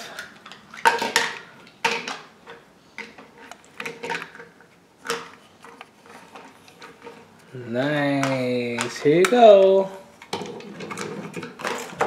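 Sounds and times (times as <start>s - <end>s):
cardboard and plastic rustling: 3.2s - 12.0s.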